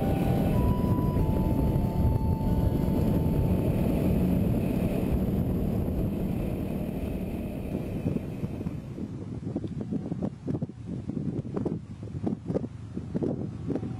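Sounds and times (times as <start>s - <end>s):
motorcycle engine running: 0.0s - 9.2s
wind buffeting microphone: 0.0s - 13.9s.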